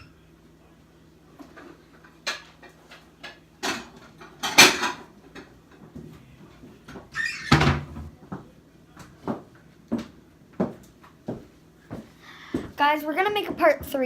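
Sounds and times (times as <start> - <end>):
loud kitchen bangs: 7.4 - 8.1.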